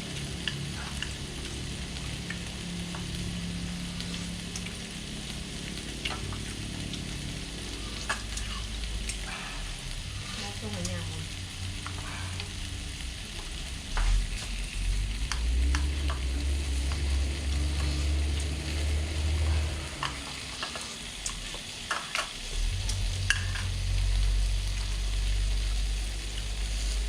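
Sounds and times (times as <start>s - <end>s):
low rumble: 0.0s - 21.5s, 22.4s - 27.0s
meat sizzling on a grill pan: 0.0s - 27.0s
utensils clicking against pan: 15.2s - 18.6s, 19.9s - 23.8s.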